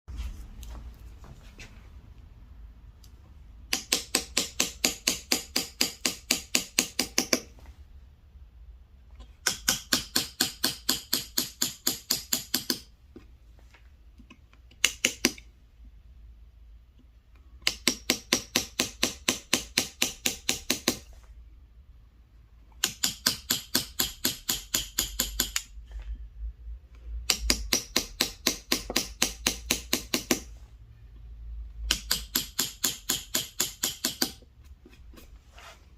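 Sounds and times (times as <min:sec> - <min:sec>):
mallet tapping carving chisel: 0:03.6 - 0:07.5, 0:09.4 - 0:12.9, 0:14.2 - 0:15.5, 0:17.6 - 0:21.1, 0:22.8 - 0:25.8, 0:27.2 - 0:30.5, 0:31.9 - 0:34.4.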